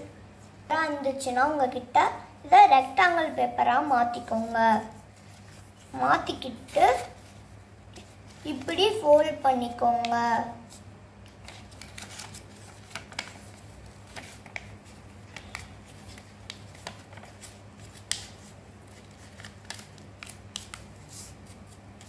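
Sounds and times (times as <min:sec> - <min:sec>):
paper being folded: 0:04.1 - 0:09.1, 0:10.0 - 0:22.0.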